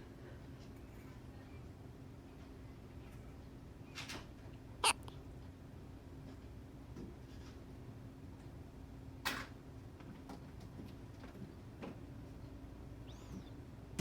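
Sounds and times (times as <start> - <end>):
hiccup: 4.8 - 5.1.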